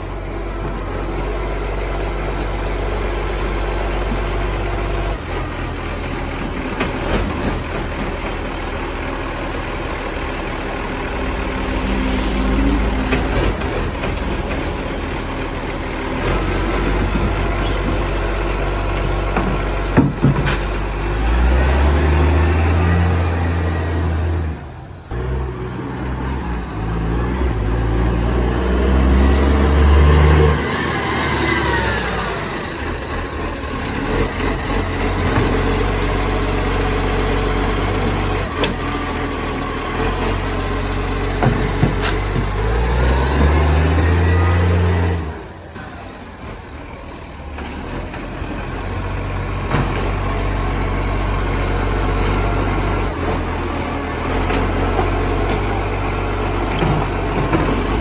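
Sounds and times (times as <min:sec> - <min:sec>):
diesel truck engine revving: 0:00.0 - 0:58.0.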